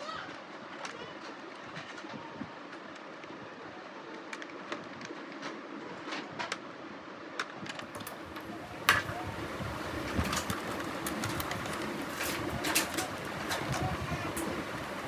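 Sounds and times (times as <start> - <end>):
faint clicks and taps: 7.8 - 15.0.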